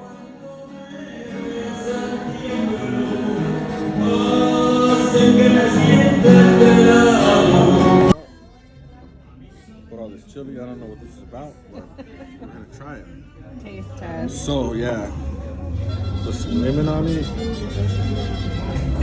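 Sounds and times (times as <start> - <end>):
sung song music: 0.0 - 8.2.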